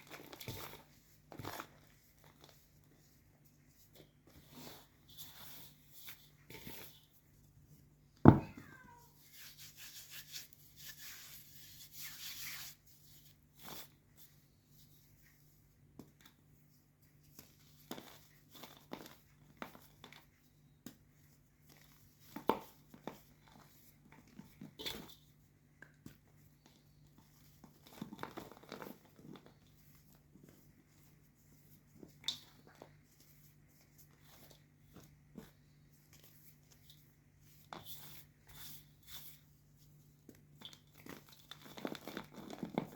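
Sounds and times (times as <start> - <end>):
chalk crunching and crumbling: 0.0 - 7.1, 9.2 - 16.1.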